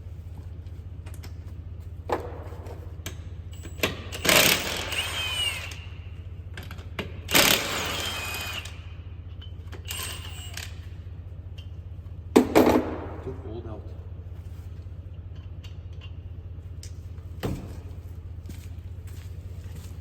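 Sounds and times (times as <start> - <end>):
steady low hum: 0.0 - 20.0
impact wrench whine: 3.5 - 11.0.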